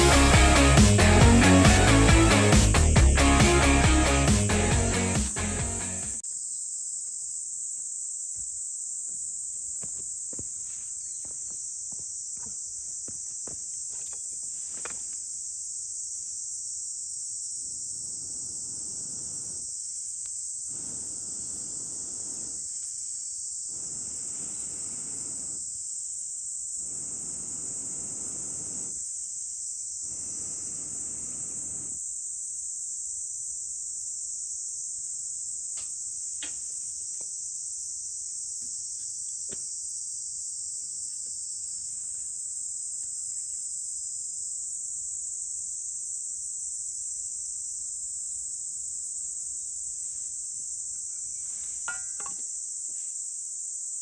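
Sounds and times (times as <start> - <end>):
insects shrilling: 0.0 - 6.8, 9.0 - 33.1, 46.0 - 54.0
breathy puffs through fire pipe: 20.7 - 22.6.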